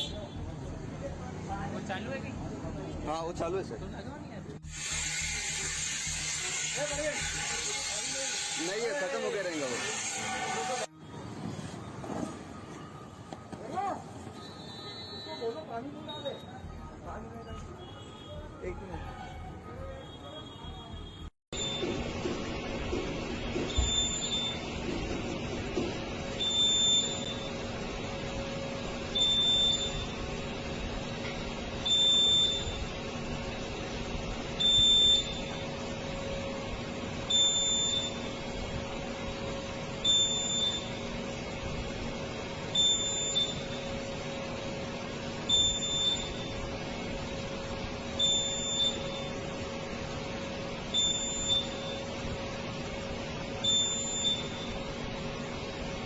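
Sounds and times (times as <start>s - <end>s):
smoke alarm beeping: 14.3s - 16.5s, 23.7s - 24.7s, 26.4s - 27.6s, 29.1s - 30.2s, 31.8s - 32.9s, 34.6s - 35.7s, 37.3s - 38.4s, 40.0s - 41.0s, 42.7s - 44.0s, 45.5s - 46.6s, 48.2s - 49.4s, 50.9s - 52.1s, 53.6s - 54.9s.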